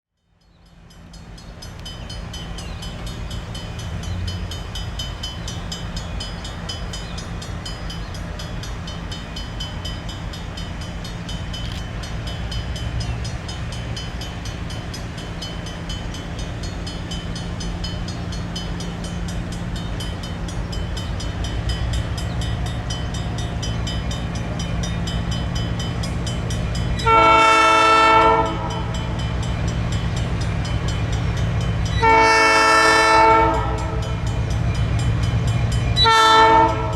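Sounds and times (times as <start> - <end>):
diesel locomotive engine droning: 0.1 - 36.9
air horn blast: 27.0 - 28.9, 32.0 - 34.1, 36.0 - 36.9.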